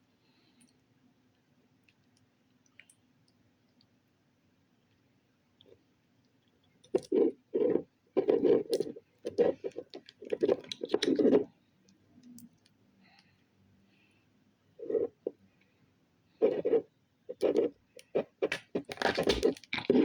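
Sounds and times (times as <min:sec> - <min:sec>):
slime squelching: 0:06.9 - 0:11.6, 0:16.4 - 0:20.0.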